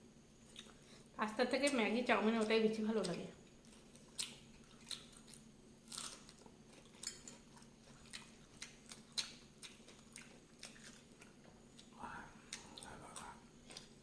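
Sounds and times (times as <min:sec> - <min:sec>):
person chewing food: 0:00.5 - 0:00.9, 0:03.5 - 0:14.0.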